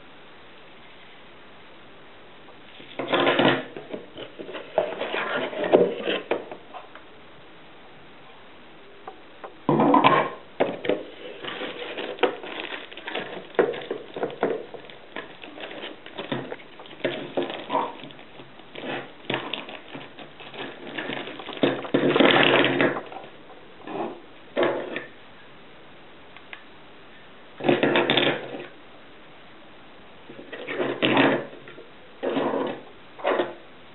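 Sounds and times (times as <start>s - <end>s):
packaging rustling: 10.8s - 23.4s.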